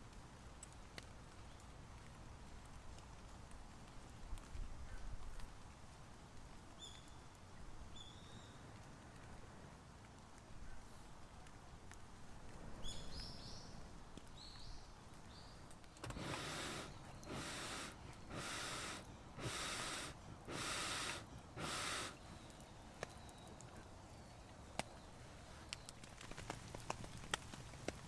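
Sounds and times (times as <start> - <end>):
rasping strokes: 16.0 - 22.2.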